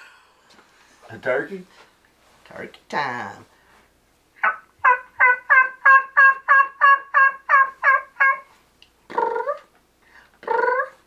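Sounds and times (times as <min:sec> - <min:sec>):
man imitating turkey calls: 0:04.4 - 0:08.5, 0:09.1 - 0:09.7, 0:10.4 - 0:11.0.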